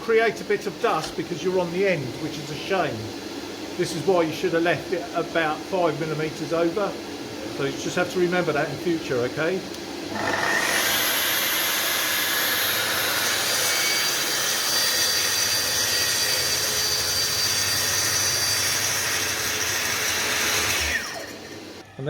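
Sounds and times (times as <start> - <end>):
track saw whining: 0.0 - 3.2, 7.6 - 22.0.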